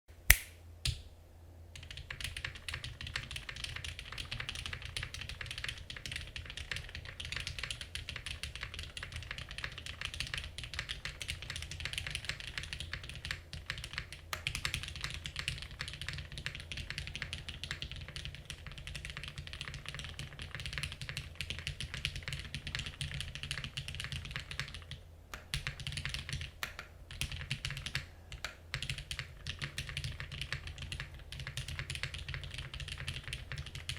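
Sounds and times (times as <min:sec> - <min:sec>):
fast typing on mechanical keyboard: 0:01.8 - 0:33.9.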